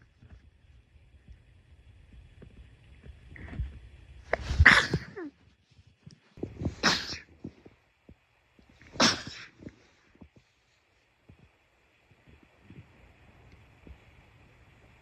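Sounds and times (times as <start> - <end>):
person sneezing: 4.4 - 5.3, 6.6 - 7.3, 8.9 - 9.7.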